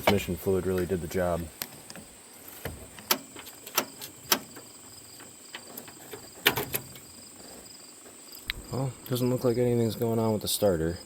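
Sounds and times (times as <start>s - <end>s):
crickets chirping: 0.0s - 11.0s.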